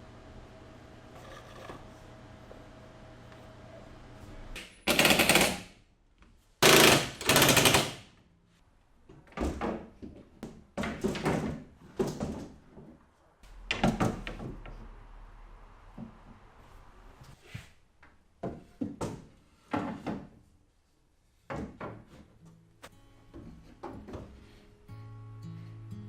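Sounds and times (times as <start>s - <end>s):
impact driver driving screws: 4.9s - 5.7s, 6.6s - 8.0s
knocks: 13.5s - 14.9s.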